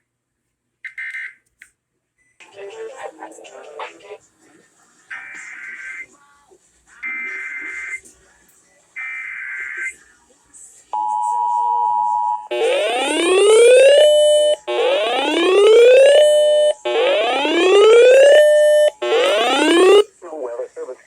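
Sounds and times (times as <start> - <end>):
whooping alarm: 12.5 - 20.0.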